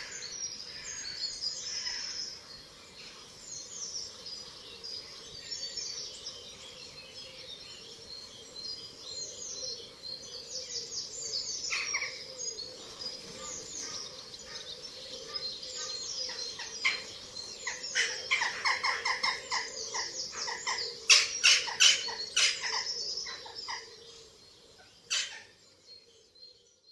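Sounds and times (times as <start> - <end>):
sharp loud bird calls: 0.0 - 2.4, 13.3 - 24.2, 25.0 - 25.6
songbirds chirping and singing: 0.0 - 26.9.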